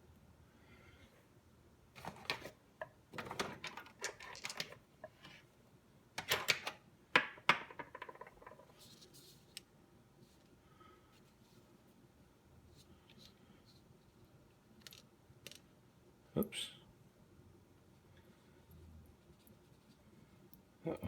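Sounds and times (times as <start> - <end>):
metal lock parts clicking: 6.2 - 6.8.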